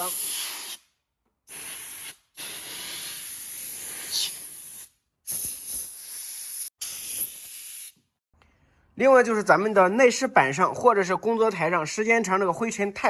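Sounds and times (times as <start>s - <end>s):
pressurised spray hissing: 0.0s - 0.8s, 1.5s - 8.0s.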